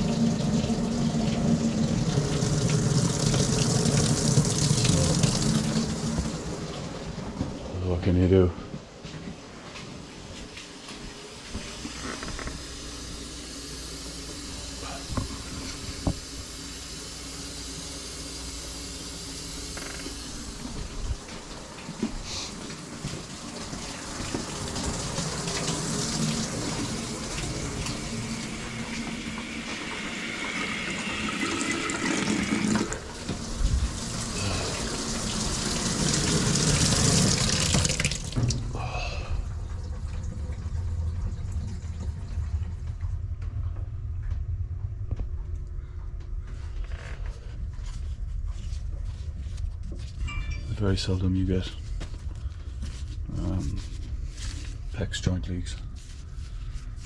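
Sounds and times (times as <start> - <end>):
water rushing out of a tap: 0.0 - 7.4, 22.8 - 42.5
low hum: 38.4 - 57.0.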